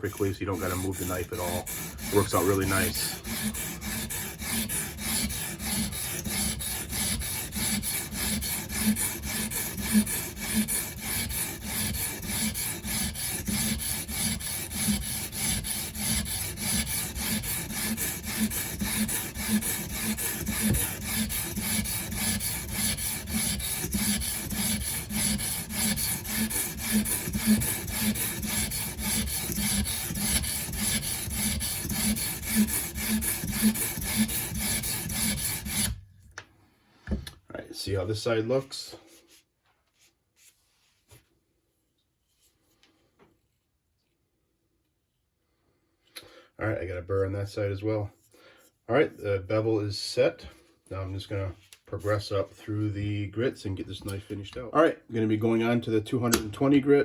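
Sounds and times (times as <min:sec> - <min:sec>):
sharpening stone rasping on knife: 0:00.0 - 0:36.0.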